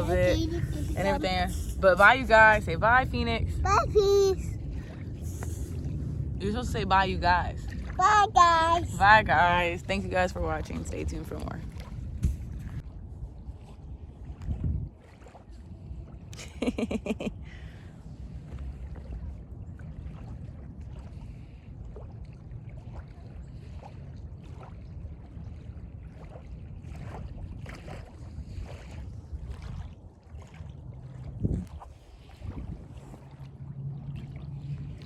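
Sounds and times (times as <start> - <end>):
wind rumbling on microphone: 0.0 - 35.0.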